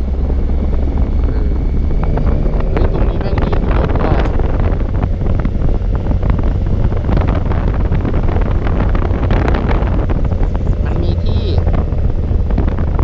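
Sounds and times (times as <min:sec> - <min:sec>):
strong wind on microphone: 0:00.0 - 0:13.0.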